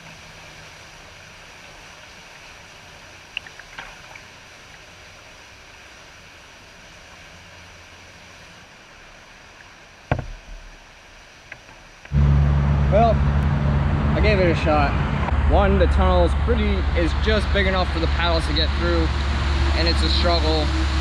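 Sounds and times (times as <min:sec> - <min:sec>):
creek water around a kayak: 0:00.0 - 0:13.6, 0:14.2 - 0:21.0
sharp knock: 0:10.1 - 0:10.5.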